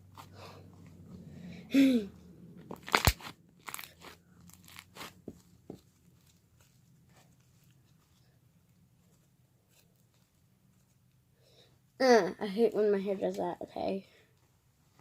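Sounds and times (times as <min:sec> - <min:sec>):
slime squishing: 0:02.6 - 0:11.2
foam beads crunching and popping: 0:02.7 - 0:05.2.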